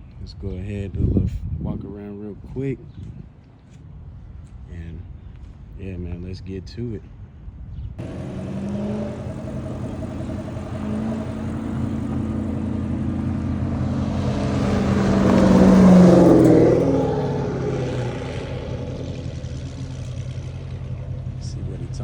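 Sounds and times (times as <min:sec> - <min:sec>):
car engine and exhaust drone: 0:08.0 - 0:22.0.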